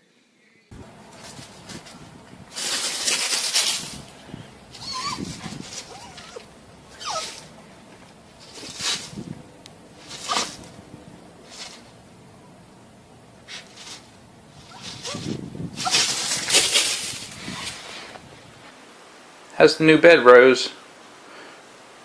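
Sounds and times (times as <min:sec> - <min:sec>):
loud rustling: 0:00.7 - 0:18.7
dog yelping: 0:04.7 - 0:07.6, 0:10.1 - 0:10.6, 0:14.6 - 0:16.6.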